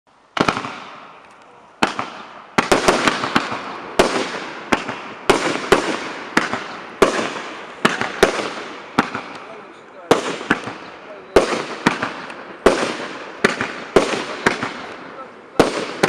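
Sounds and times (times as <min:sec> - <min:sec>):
fireworks hiss and crackle: 0:00.2 - 0:16.0
fireworks sharp bangs: 0:00.3 - 0:16.0.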